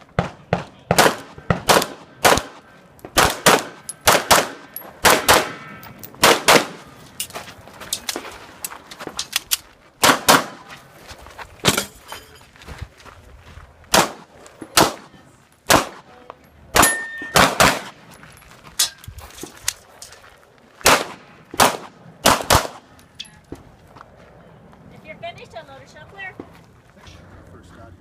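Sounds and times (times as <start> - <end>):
pistol shots: 0.2 - 6.9, 10.0 - 10.6, 13.9 - 15.1, 15.7 - 16.1, 16.7 - 18.0, 20.8 - 22.9
steel targets ringing: 16.8 - 17.5.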